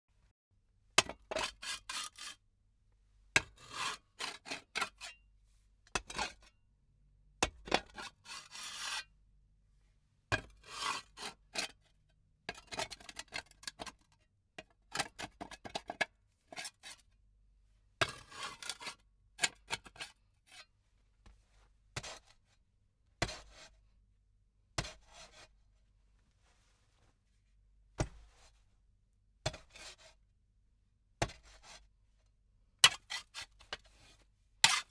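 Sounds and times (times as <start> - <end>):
hoe blade scraping and dragging: 1.4 - 2.4, 8.2 - 9.0, 34.6 - 34.9.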